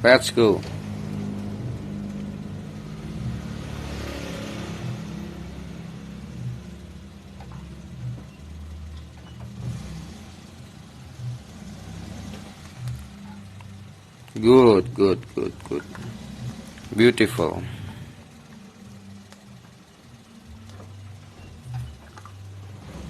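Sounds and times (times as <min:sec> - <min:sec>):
car engine at low revs: 0:00.0 - 0:23.0.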